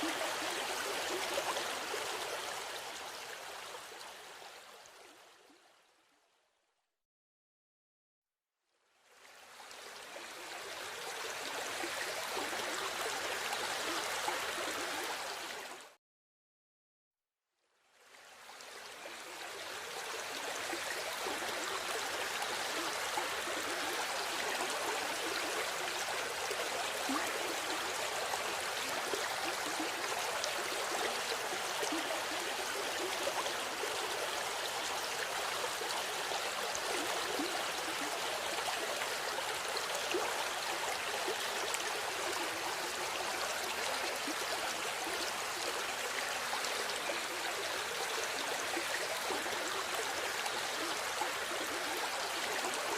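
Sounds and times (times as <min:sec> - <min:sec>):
river flowing over stones: 0:00.0 - 0:04.8, 0:18.2 - 0:52.9.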